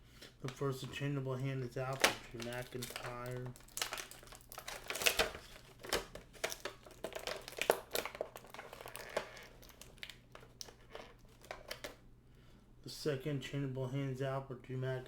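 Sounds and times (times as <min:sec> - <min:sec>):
plastic packaging crinkling: 0:00.4 - 0:12.0.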